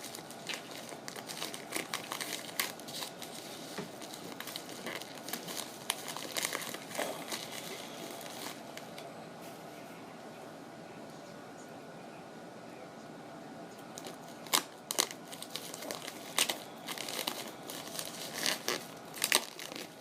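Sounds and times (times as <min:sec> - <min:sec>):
packaging crinkling: 0:00.0 - 0:09.0, 0:13.9 - 0:20.0.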